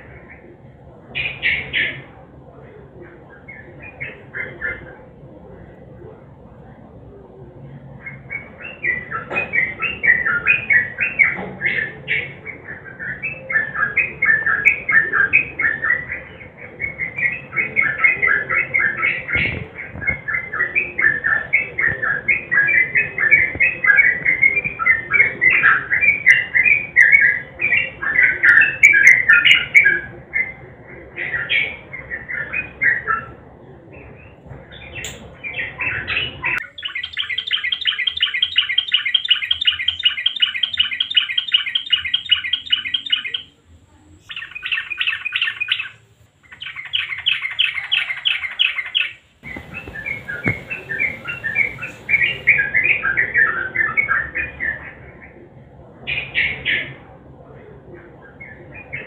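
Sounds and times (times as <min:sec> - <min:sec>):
bird singing chattering notes: 0:34.7 - 0:43.5, 0:44.2 - 0:53.1.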